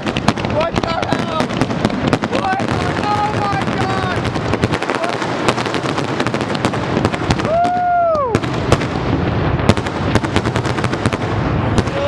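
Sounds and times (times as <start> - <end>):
fireworks shells bursting: 0.0 - 7.6
person shouting: 7.4 - 8.4, 11.8 - 12.0.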